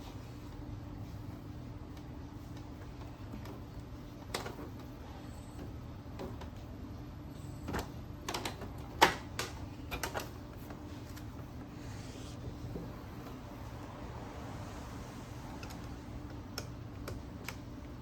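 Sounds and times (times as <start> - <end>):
steady low hum: 9.6 - 18.0.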